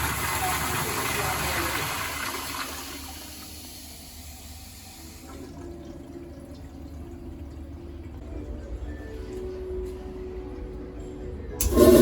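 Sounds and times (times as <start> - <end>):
toilet flush rushing water: 0.0 - 5.9, 11.6 - 12.0
toilet refilling water flow: 0.0 - 8.2, 11.6 - 12.0.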